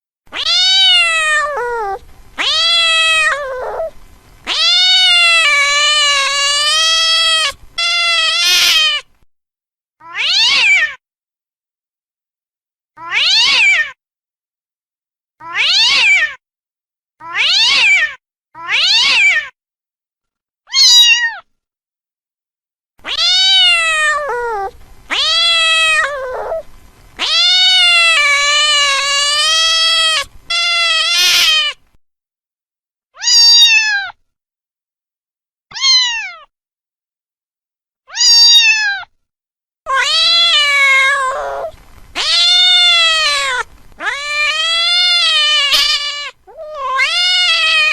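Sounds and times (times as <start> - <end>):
cat meowing: 0.3 - 9.1, 10.0 - 11.0, 13.0 - 13.9, 15.4 - 16.4, 17.2 - 18.0, 18.6 - 19.5, 20.7 - 21.4, 23.0 - 31.8, 33.2 - 34.2, 35.7 - 36.5, 38.1 - 39.1, 39.9 - 47.9.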